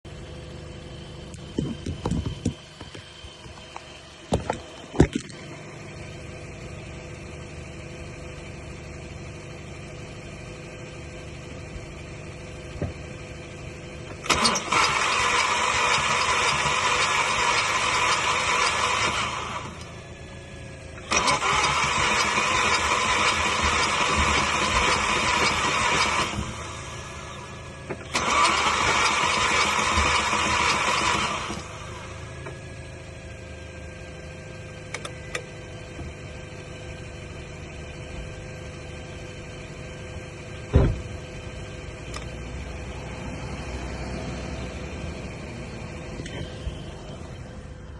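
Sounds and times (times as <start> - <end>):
steady low hum: 0.1 - 14.2
starter motor cranking engine: 14.0 - 20.2, 20.9 - 32.6.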